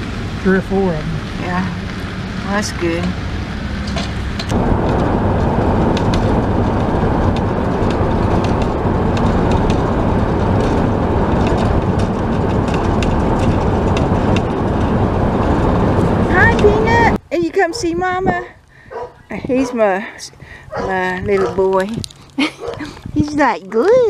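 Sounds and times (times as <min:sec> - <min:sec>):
road and tyre rumble: 0:00.0 - 0:24.0
small clicks and rattles: 0:05.8 - 0:16.8.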